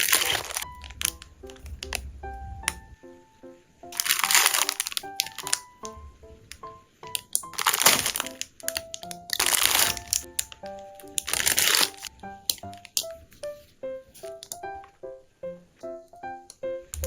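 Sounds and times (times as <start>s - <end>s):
plastic packaging crinkling: 0.0s - 2.0s, 3.9s - 5.9s, 7.2s - 13.1s
light background music: 0.0s - 17.0s.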